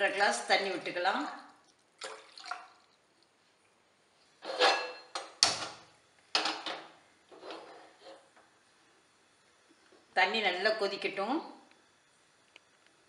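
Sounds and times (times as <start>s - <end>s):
metal pots knocking and clattering: 4.5s - 5.8s.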